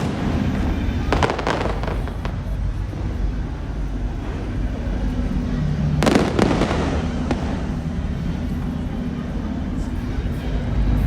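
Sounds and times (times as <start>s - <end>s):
faint firework cracks: 0.0s - 2.8s, 6.0s - 8.9s
loud firework bangs: 0.0s - 3.4s, 6.0s - 8.9s
fireworks rumble: 0.0s - 11.0s.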